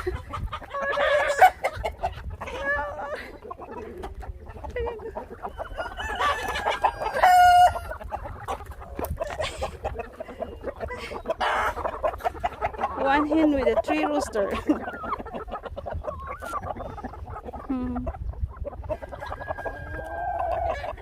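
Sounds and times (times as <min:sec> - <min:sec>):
chickens clucking: 0:00.0 - 0:21.0
rooster crowing: 0:05.7 - 0:07.8.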